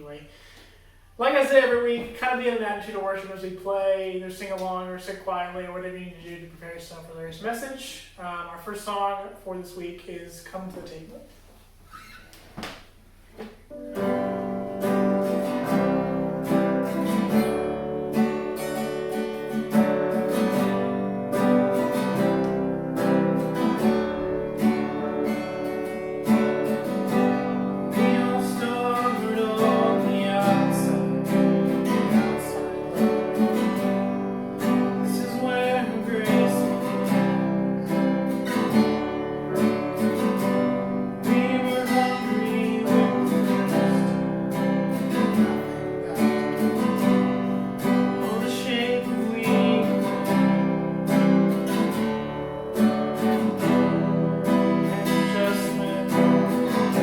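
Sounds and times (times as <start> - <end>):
acoustic guitar strummed: 13.5 - 57.0.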